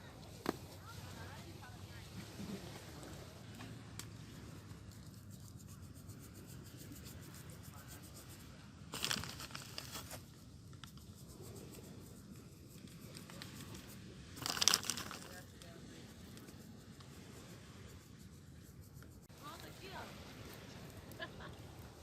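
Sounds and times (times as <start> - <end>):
crinkling scratchy rustle: 8.9 - 11.0, 13.1 - 15.5.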